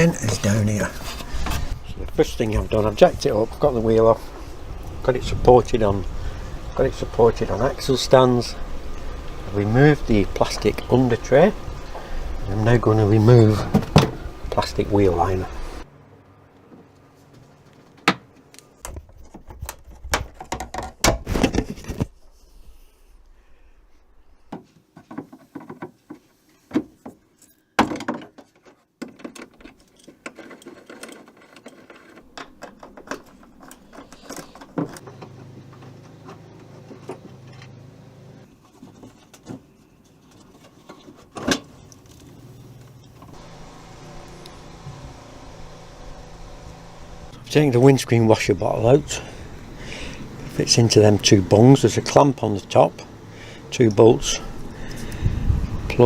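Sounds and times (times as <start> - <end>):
hand tools clicking and rattling: 27.3 - 37.8
steady low hum: 42.6 - 56.0.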